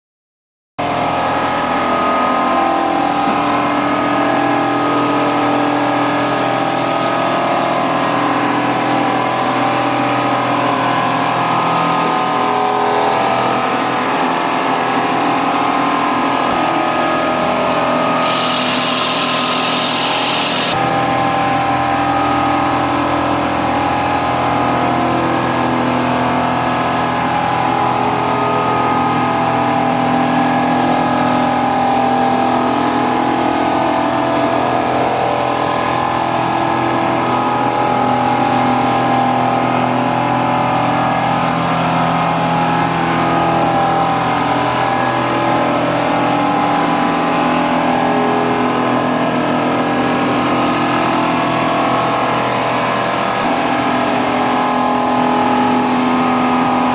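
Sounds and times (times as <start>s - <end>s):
sewing machine motor hum: 18.2s - 20.8s.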